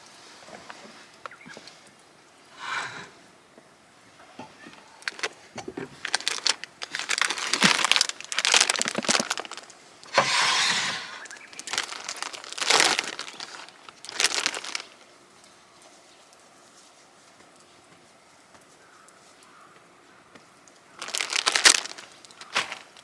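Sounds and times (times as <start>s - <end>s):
hissing rustle: 4.2s - 17.8s, 21.0s - 23.0s
crinkling and crunching: 4.4s - 15.5s, 20.8s - 23.0s.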